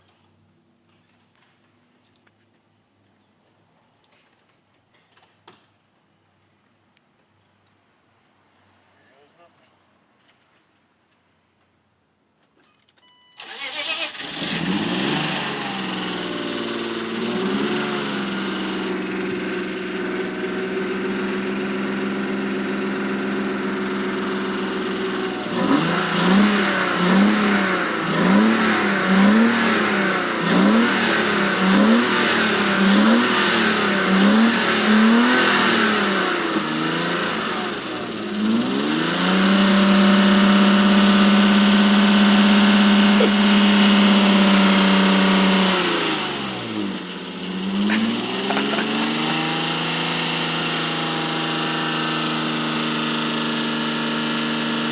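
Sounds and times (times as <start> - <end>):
car engine idling and revving: 13.4 - 54.9.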